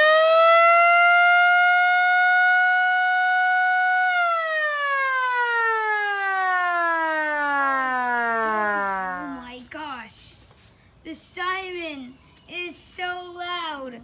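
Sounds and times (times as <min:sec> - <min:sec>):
siren wailing: 0:00.0 - 0:09.5.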